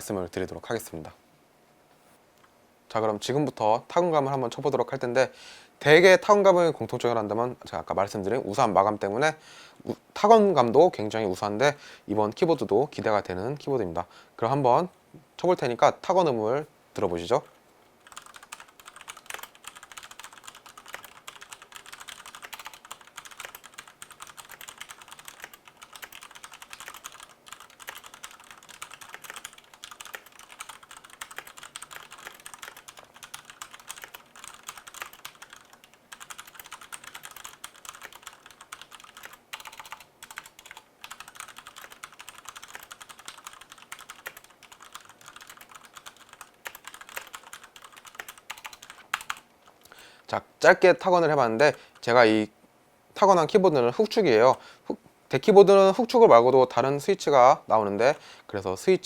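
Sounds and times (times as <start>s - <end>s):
fast typing on mechanical keyboard: 18.0s - 49.4s.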